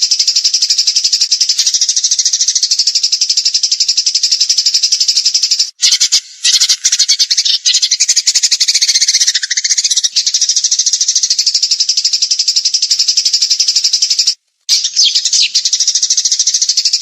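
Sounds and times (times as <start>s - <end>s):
rapid high-pitched bird trill: 0.0s - 17.0s.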